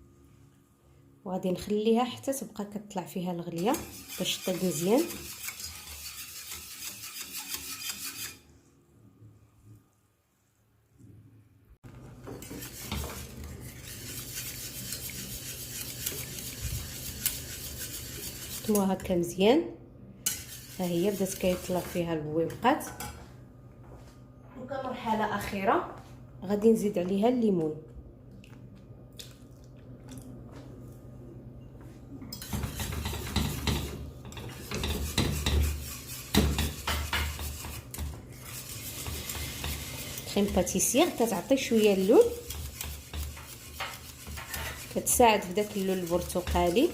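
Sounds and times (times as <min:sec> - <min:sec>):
utensil scraping in a saucepan: 0:03.4 - 0:08.6, 0:12.2 - 0:19.2, 0:20.2 - 0:22.3, 0:32.4 - 0:46.9.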